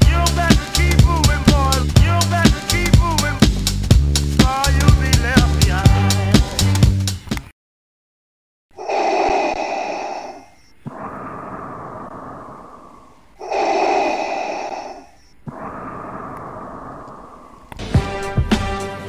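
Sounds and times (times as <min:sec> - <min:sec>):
mechanical respirator breathing: 0:08.8 - 0:17.8.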